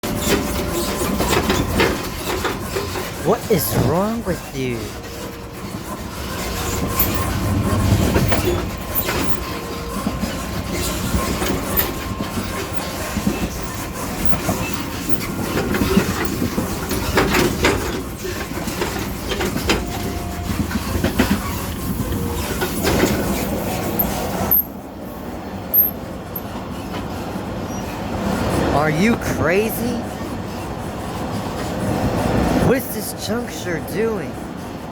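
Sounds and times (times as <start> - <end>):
wheels clickety-clack: 0.0 - 3.2, 5.0 - 28.7, 30.0 - 32.6
train running rumble: 4.8 - 29.3, 30.0 - 32.6.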